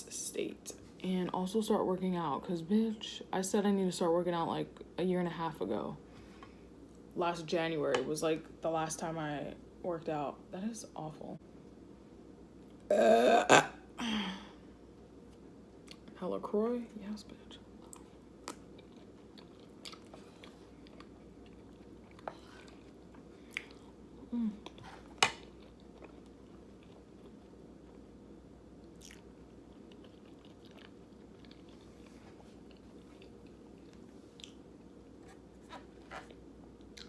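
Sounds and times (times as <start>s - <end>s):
person chewing and crunching: 17.8s - 24.0s, 24.6s - 28.0s, 28.8s - 34.6s.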